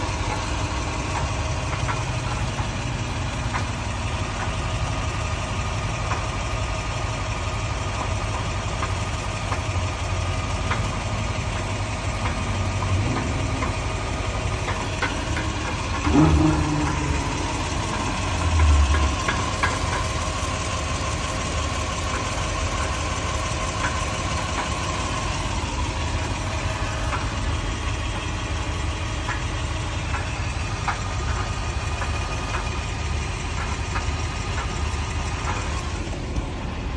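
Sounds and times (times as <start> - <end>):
car engine idling: 0.0 - 36.9
clunking: 8.0 - 36.9
low thumps: 12.6 - 20.3.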